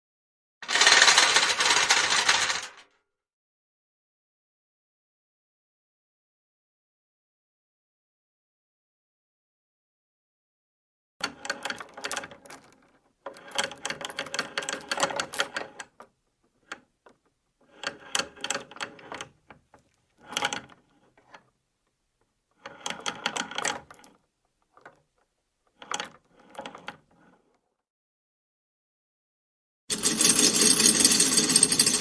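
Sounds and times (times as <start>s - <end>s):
metal chains rattling: 0.6s - 2.8s, 29.9s - 32.0s.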